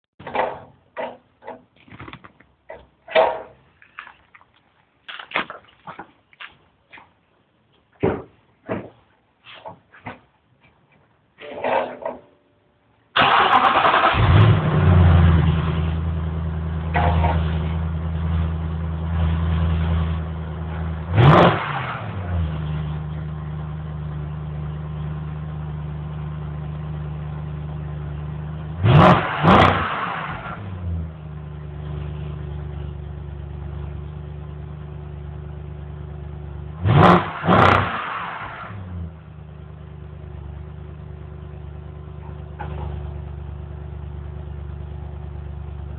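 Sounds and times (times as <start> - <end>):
car engine starting and idling: 13.0 - 45.9
engine revving: 13.2 - 23.0, 28.7 - 31.1, 36.7 - 39.2.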